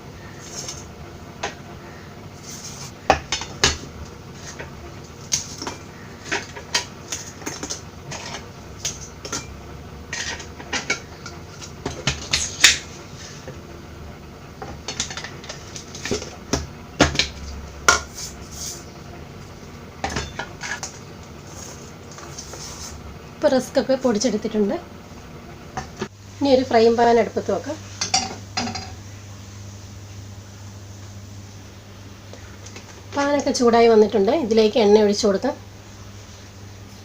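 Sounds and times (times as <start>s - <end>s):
kitchen utensils clinking and knocking: 20.0s - 21.0s.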